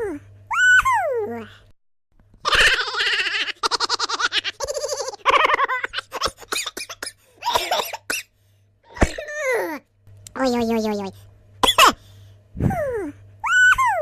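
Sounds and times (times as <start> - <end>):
high-pitched cartoon giggling: 2.4 - 7.0, 13.4 - 14.0.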